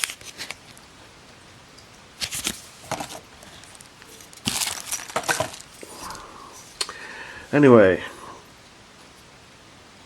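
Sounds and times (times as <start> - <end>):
paper crinkling and rustling: 0.0 - 0.8, 2.2 - 5.8.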